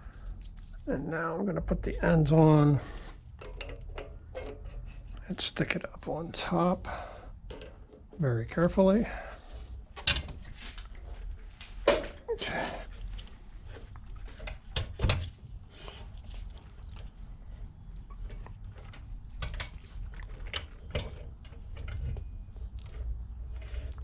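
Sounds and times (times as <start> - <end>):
low steady hum: 0.0 - 24.0
light metal clicks and knocks: 7.4 - 8.2.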